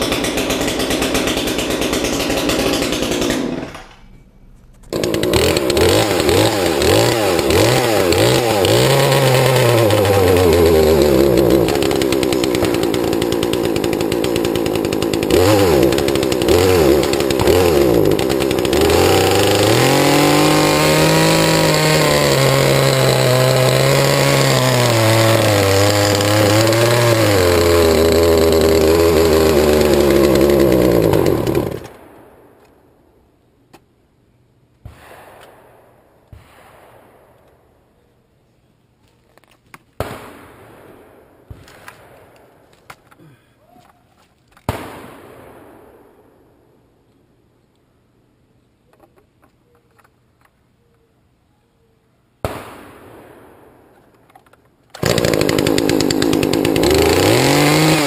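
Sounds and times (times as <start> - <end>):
chainsaw revving: 0.0 - 4.0, 4.9 - 32.0, 55.0 - 58.0.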